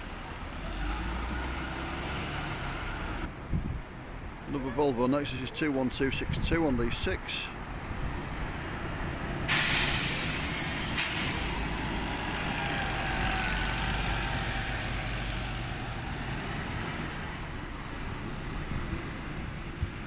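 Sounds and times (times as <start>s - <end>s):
bus diesel engine rumbling: 0.0s - 20.0s
compressed-air hiss: 9.5s - 11.7s.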